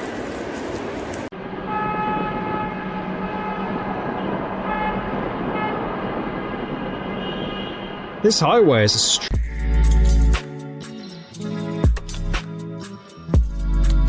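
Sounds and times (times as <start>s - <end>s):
traffic noise: 0.0s - 9.4s
vehicle horn honking: 7.1s - 8.0s.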